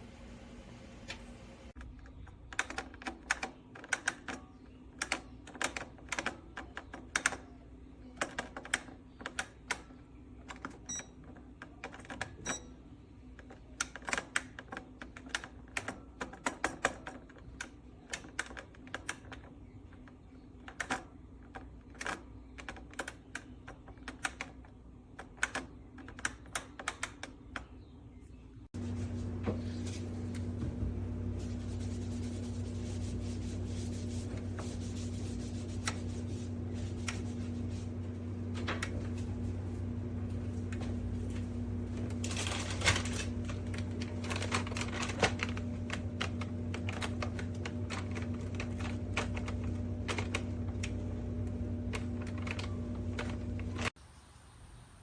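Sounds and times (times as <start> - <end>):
steady low hum: 28.0 - 54.0
rapid irregular clicking: 41.8 - 54.0.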